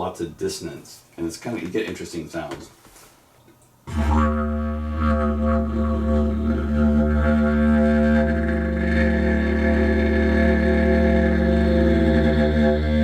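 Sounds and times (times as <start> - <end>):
didgeridoo drone: 3.9 - 13.0.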